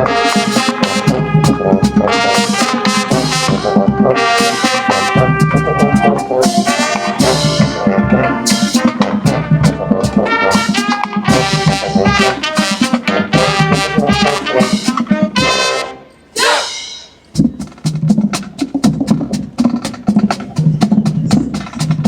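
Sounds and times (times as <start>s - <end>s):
drum hits: 0.0s - 15.8s, 16.4s - 22.0s
trumpets and trombones: 0.0s - 17.3s
marching band playing: 0.0s - 22.0s.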